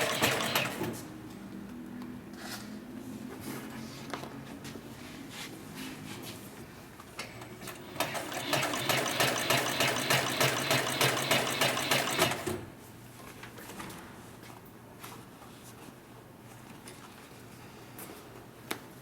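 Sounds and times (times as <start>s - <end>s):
sewing machine stitching: 0.0s - 1.0s, 7.6s - 12.6s.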